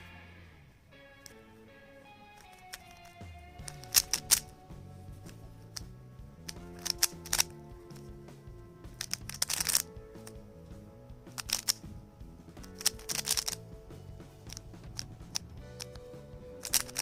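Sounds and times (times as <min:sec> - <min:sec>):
background music: 0:00.0 - 0:17.0
plastic cube layers clicking: 0:02.4 - 0:04.5, 0:06.5 - 0:07.5, 0:09.0 - 0:09.9, 0:11.3 - 0:11.9, 0:12.6 - 0:13.6, 0:16.6 - 0:17.0.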